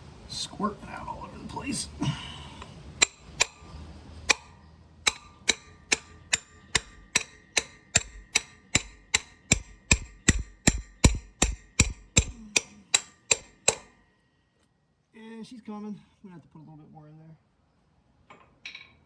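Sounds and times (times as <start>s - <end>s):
hammer striking steel: 3.0s - 14.0s.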